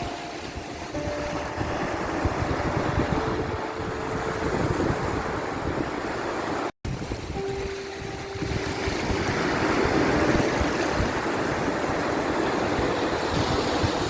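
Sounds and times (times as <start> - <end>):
waves washing: 0.0 - 14.0
wind buffeting microphone: 0.0 - 14.0.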